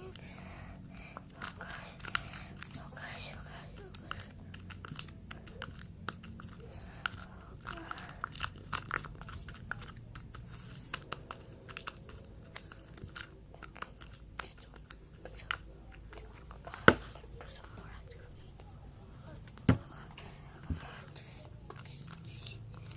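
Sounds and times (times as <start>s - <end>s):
sticky slime clicks and squelches: 3.7s - 18.0s.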